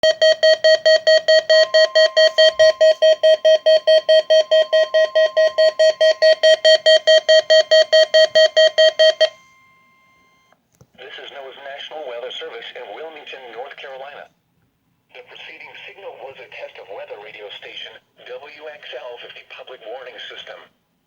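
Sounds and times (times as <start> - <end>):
weather radio alarm beeping rapidly: 0.0 - 9.4
faint steady warning tone: 0.0 - 10.6.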